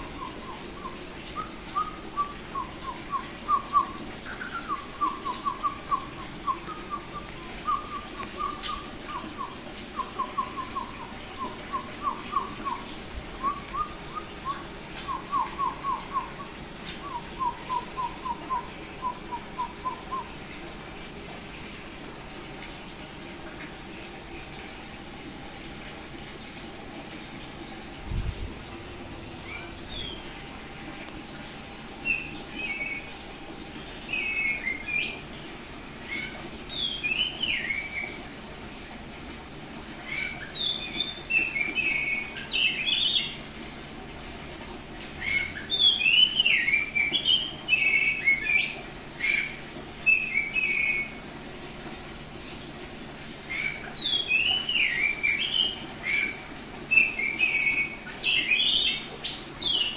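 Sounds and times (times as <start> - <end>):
bird singing whistled phrases: 0.2 - 20.3, 29.3 - 30.3, 32.0 - 33.0, 34.1 - 35.2, 36.1 - 38.2.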